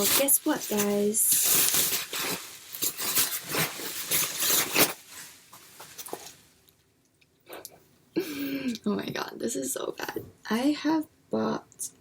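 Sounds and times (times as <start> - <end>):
plastic packaging crinkling: 0.0 - 6.6.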